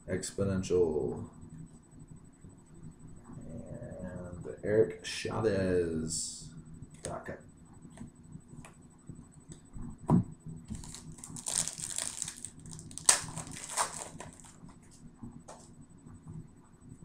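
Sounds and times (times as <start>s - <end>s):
foil wrapper crinkling: 10.7s - 15.0s.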